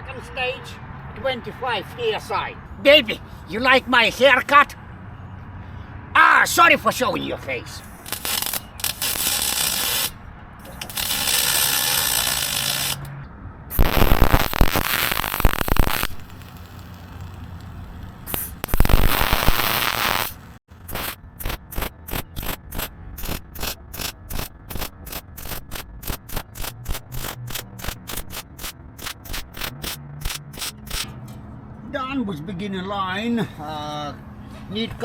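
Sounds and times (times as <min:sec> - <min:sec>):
welding arc crackling and hissing: 0:07.8 - 0:13.1, 0:13.7 - 0:31.0
rhythmic rubbing: 0:13.7 - 0:31.0.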